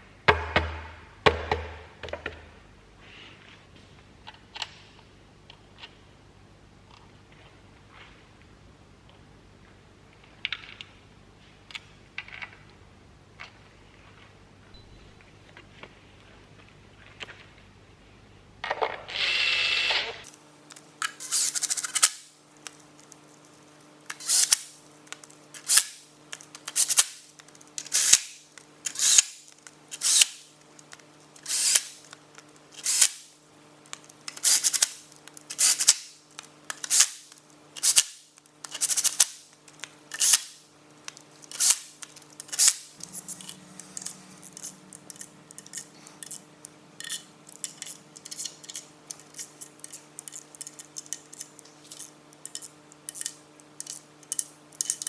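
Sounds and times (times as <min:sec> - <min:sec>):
faint steady hum: 0:00.0 - 0:55.0
hand tool scraping metal: 0:21.0 - 0:22.3, 0:24.1 - 0:33.3, 0:34.0 - 0:55.0.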